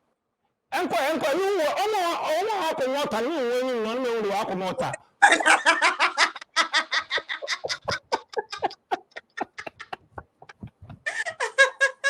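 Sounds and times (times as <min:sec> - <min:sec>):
laughter: 0:05.2 - 0:12.0.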